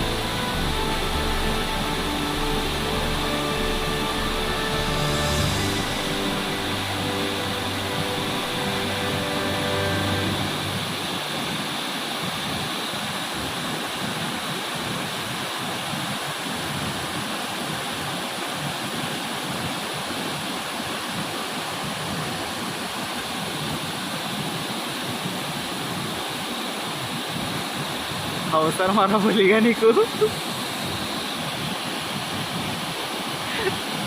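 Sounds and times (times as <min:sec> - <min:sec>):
waterfall rushing: 0:00.0 - 0:34.0.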